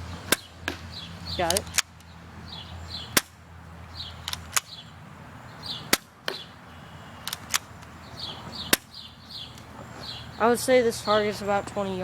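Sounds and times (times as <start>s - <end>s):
airsoft pistol shots snapping: 0.3s - 2.0s, 3.1s - 3.4s, 4.2s - 4.8s, 5.9s - 6.5s, 7.3s - 7.7s, 8.7s - 8.9s.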